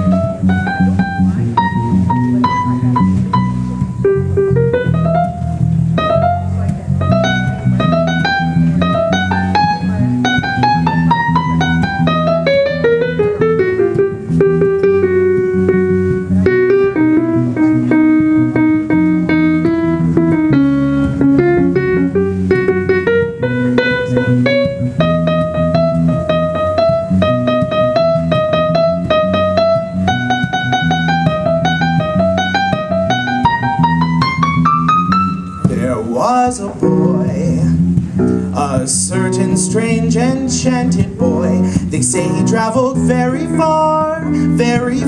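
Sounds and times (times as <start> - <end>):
repeating keyboard accompaniment: 0.0 - 36.0
sliding held melody line: 0.0 - 45.0.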